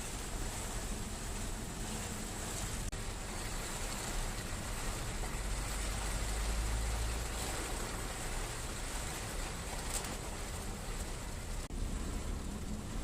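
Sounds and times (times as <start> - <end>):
steady rain hiss: 0.0 - 13.0
low rumble: 10.4 - 13.0.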